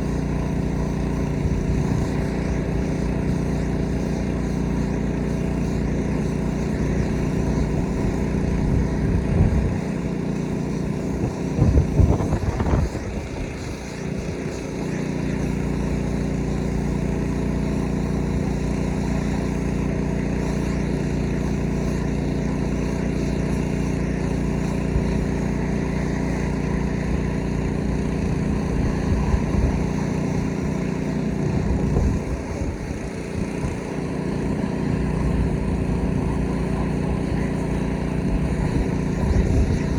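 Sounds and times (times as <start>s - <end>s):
pressure washer engine running: 0.0s - 39.9s
noisy rushes: 10.8s - 14.6s, 26.5s - 39.9s.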